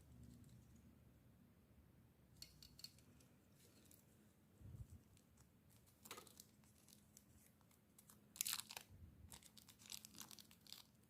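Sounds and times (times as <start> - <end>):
plastic crinkling and rustling: 4.7 - 11.0.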